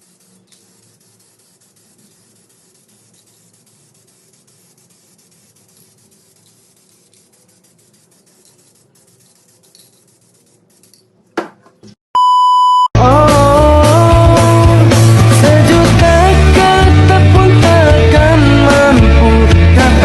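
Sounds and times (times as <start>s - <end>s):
electronic beep: 12.2s - 12.9s
rock music with guitar and drums: 13.0s - 20.0s.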